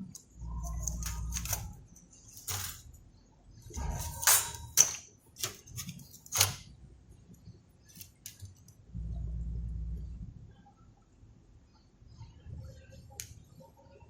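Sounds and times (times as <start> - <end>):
tools clicking and tapping: 0.0 - 3.0, 3.7 - 6.6
steady low hum: 8.7 - 14.0.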